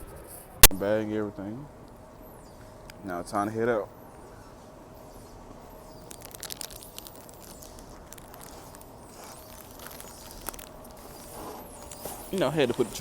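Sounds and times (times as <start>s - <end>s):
low background hum: 0.0s - 13.0s
plastic bag crinkling: 5.9s - 13.0s.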